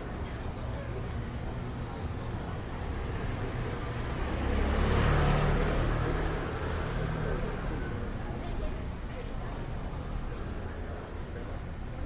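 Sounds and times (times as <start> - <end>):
vehicle passing by: 4.1 - 7.8.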